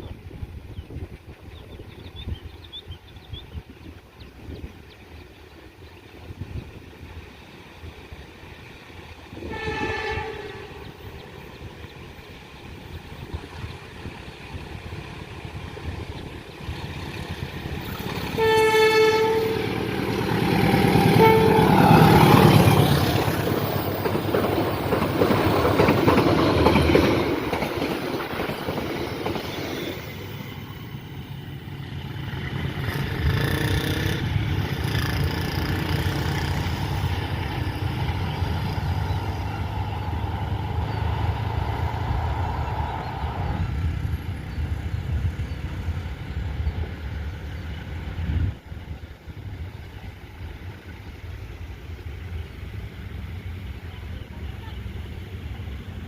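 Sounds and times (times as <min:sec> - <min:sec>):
train wheels rumbling on rails: 0:00.0 - 0:56.0
train horn blasts: 0:09.4 - 0:10.9, 0:18.3 - 0:19.9, 0:21.0 - 0:22.2.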